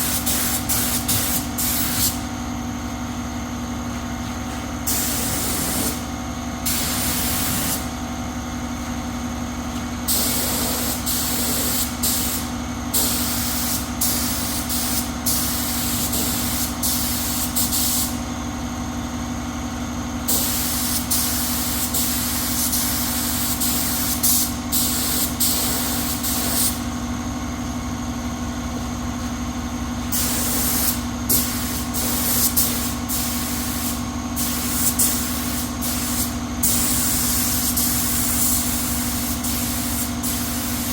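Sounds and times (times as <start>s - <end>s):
compressed-air spray gun hissing: 0.0s - 2.3s, 4.8s - 8.0s, 10.1s - 18.3s, 20.3s - 26.9s, 30.1s - 40.9s
steady machine hum: 0.0s - 40.9s.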